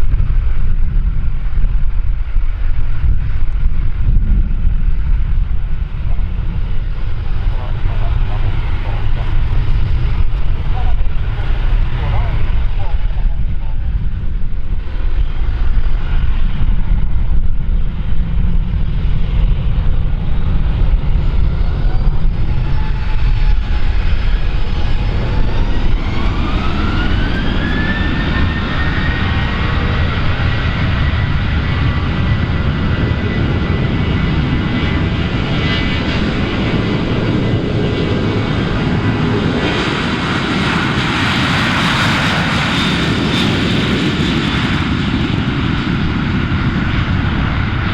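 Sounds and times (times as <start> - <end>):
low rumble: 0.0 - 47.9
rising engine whine: 0.0 - 47.9
jet engines spooling up: 20.2 - 47.9.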